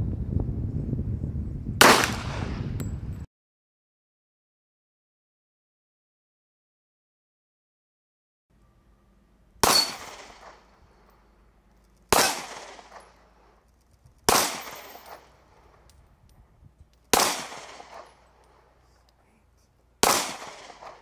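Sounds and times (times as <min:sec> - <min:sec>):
pistol shots: 0:01.8 - 0:02.5, 0:09.6 - 0:11.1, 0:12.1 - 0:13.6, 0:14.2 - 0:15.8, 0:17.1 - 0:18.7, 0:20.0 - 0:21.0.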